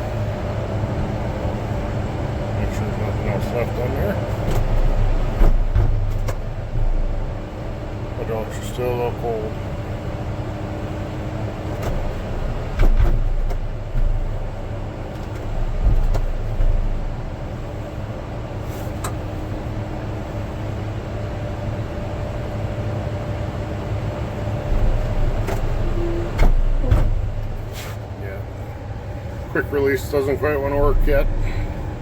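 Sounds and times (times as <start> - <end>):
bulldozer diesel engine idling: 0.0 - 32.0
sharp knocks and clunks: 4.4 - 7.2, 11.7 - 14.5, 15.1 - 17.2, 24.7 - 27.8.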